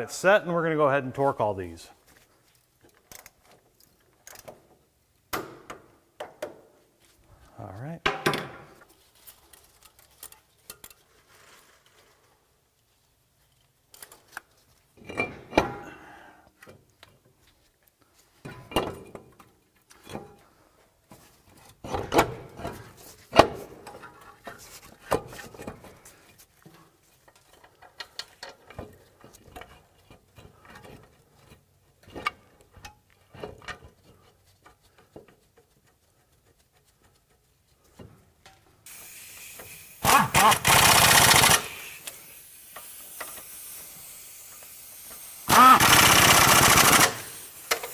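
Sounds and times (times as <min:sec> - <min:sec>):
metallic clicks and clanks: 0:09.3 - 0:11.2, 0:27.2 - 0:38.7
torque wrench ratcheting: 0:38.9 - 0:47.9.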